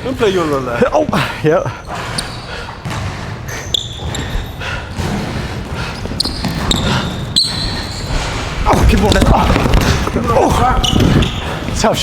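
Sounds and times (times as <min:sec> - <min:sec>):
sneakers squeaking on floor: 0:00.0 - 0:12.0
basketball dribbling: 0:02.0 - 0:12.0.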